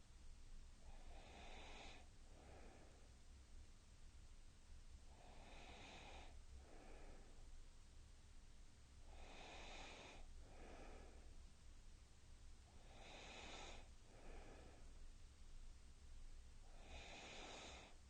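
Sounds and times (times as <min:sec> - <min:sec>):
faint slow breathing: 0:00.8 - 0:03.2, 0:05.1 - 0:07.5, 0:09.0 - 0:11.4, 0:12.6 - 0:15.0, 0:16.6 - 0:18.0.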